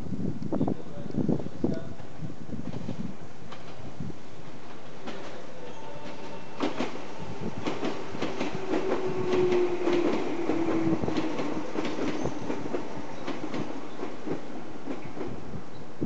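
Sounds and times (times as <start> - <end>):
train wheels clattering: 4.5 - 15.4.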